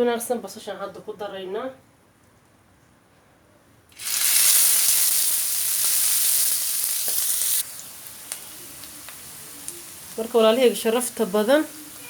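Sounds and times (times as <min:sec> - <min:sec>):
onions sizzling in oil: 0:04.0 - 0:12.0.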